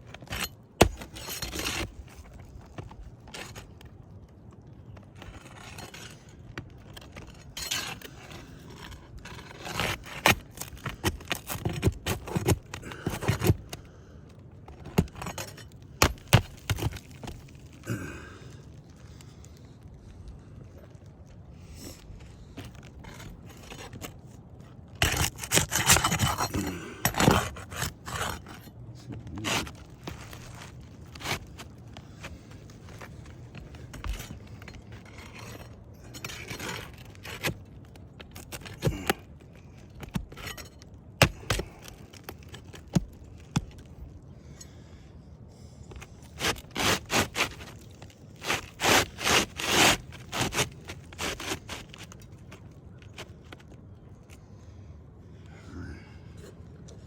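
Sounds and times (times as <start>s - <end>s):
roof shingles scraping: 29.3s - 43.7s, 46.0s - 53.7s.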